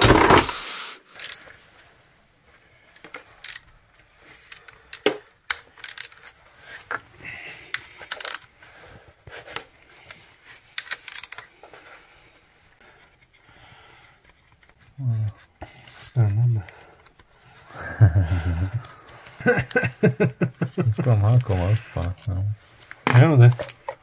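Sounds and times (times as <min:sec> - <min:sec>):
socket wrench clicking: 0:01.1 - 0:01.4, 0:03.4 - 0:03.7, 0:04.9 - 0:06.2, 0:07.7 - 0:08.5, 0:10.8 - 0:11.4.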